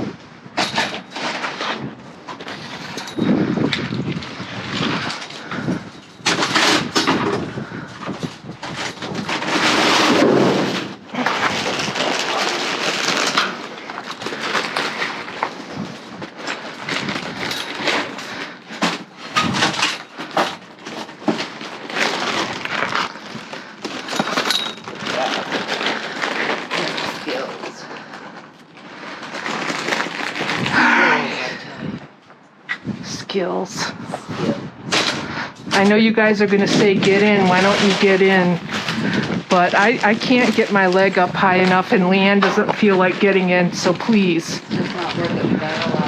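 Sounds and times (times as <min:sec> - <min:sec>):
goods clattering in a dumpster: 0:00.4 - 0:28.4
scraping rustle: 0:00.8 - 0:31.2.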